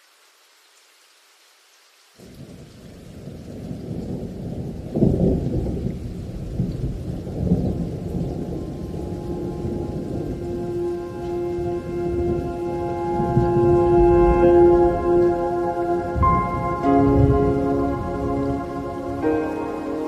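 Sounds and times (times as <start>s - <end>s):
light rain hiss: 0.0s - 20.0s
thunder rumbling: 2.4s - 20.0s
low sustained musical tone: 8.3s - 20.0s.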